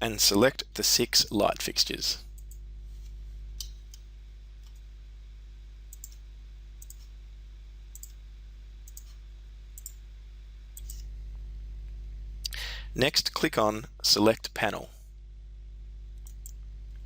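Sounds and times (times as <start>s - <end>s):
low steady hum: 0.0s - 17.0s
computer mouse clicking: 6.8s - 7.1s, 7.9s - 8.2s, 8.9s - 9.2s, 9.8s - 10.0s, 10.8s - 11.0s.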